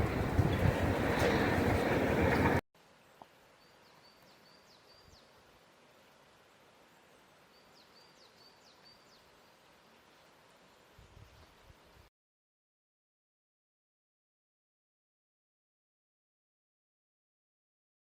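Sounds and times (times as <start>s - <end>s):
wind on microphone: 0.0s - 2.6s, 11.0s - 12.1s.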